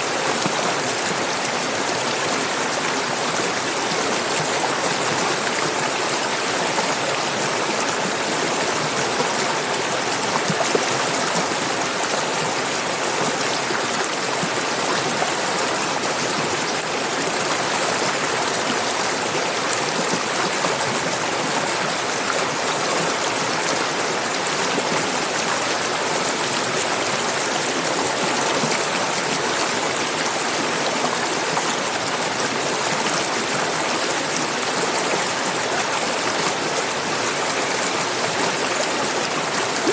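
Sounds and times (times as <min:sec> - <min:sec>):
stream running over rocks: 0:00.0 - 0:39.9.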